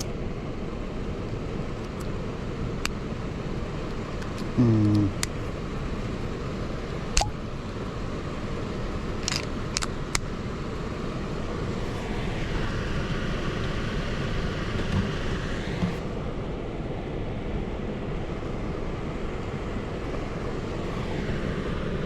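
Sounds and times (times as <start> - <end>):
blower fan running: 0.0 - 22.0
sharp clicks: 9.2 - 10.3.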